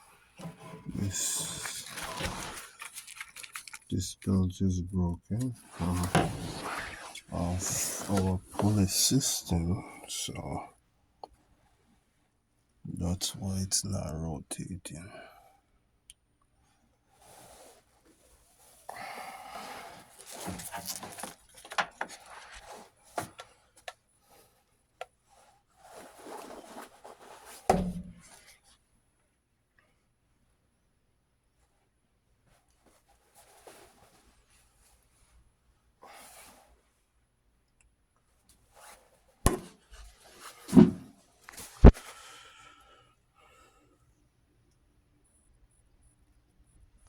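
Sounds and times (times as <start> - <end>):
heavy thump: 6.0 - 6.6, 39.5 - 39.8.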